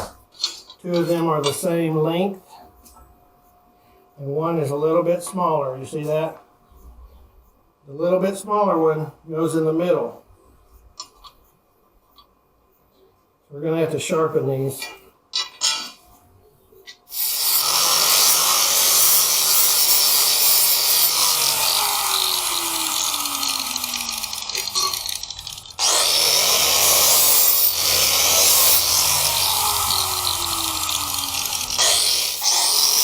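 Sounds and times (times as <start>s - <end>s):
angle grinder grinding steel: 17.0s - 33.0s.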